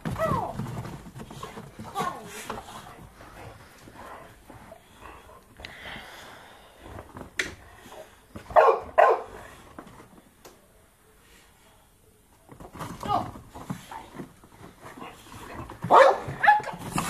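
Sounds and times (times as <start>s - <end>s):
dog barking: 8.5s - 9.4s, 15.9s - 16.8s.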